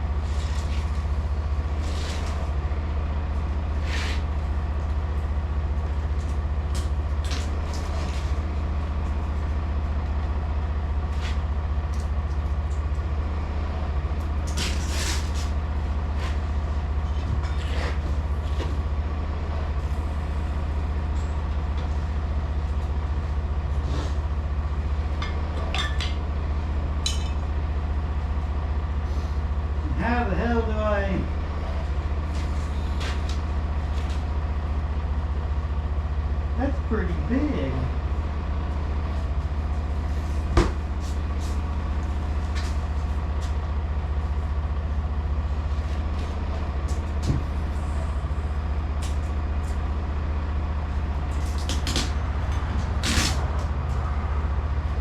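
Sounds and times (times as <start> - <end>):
diesel engine idling: 0.0 - 55.0.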